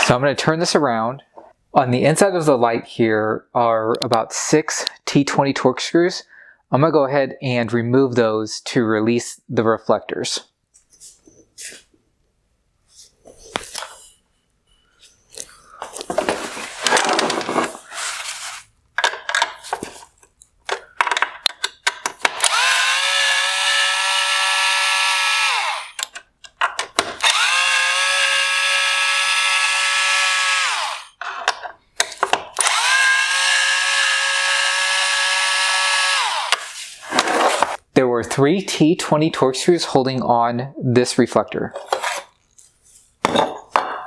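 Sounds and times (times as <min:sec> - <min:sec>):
clicks and rattles of parts: 0:15.3 - 0:17.9, 0:19.0 - 0:22.8, 0:26.0 - 0:27.7, 0:31.2 - 0:33.0
power screwdriver whine: 0:22.2 - 0:26.1, 0:27.1 - 0:31.2, 0:32.6 - 0:37.8.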